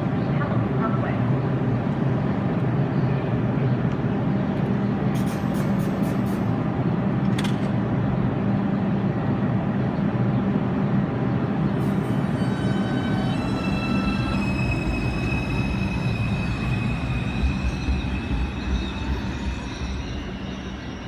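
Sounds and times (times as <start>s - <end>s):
subway train running: 0.0s - 21.0s
high-pitched wheel squeal: 11.7s - 21.0s.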